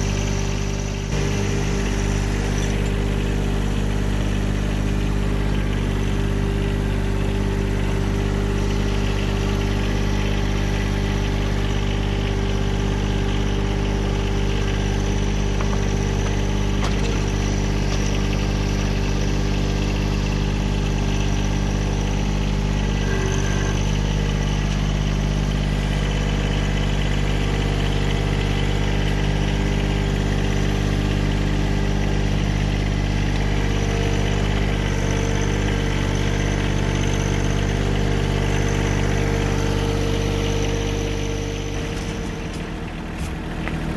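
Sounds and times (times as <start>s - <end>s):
engine running steadily: 0.0s - 43.9s.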